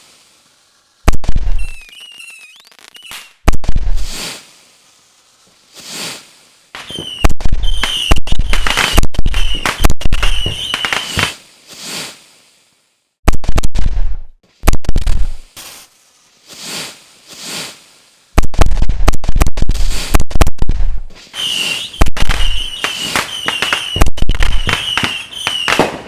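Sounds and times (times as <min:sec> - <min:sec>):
fireworks whistles: 0:00.7 - 0:04.4, 0:06.8 - 0:12.2, 0:18.5 - 0:26.0
fireworks bursting bangs: 0:01.0 - 0:05.0, 0:05.7 - 0:12.3, 0:13.3 - 0:17.8, 0:18.4 - 0:26.0.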